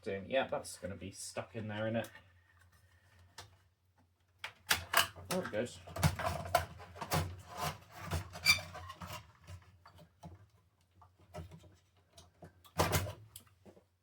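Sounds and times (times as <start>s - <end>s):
hardware clicking and knocking in pc case: 4.5s - 7.4s.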